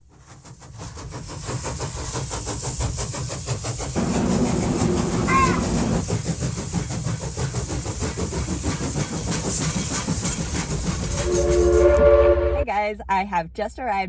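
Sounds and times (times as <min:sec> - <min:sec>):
train running: 0:00.0 - 0:14.0
train horn warning chord: 0:11.2 - 0:12.7.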